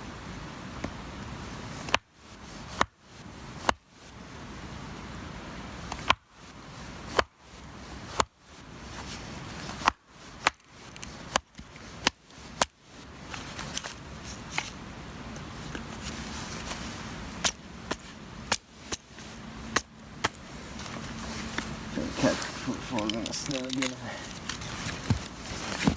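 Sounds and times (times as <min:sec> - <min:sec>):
axe chopping firewood: 0:05.9 - 0:06.2, 0:07.1 - 0:07.3, 0:08.1 - 0:08.3, 0:09.8 - 0:12.8, 0:17.4 - 0:20.4, 0:21.5 - 0:25.9.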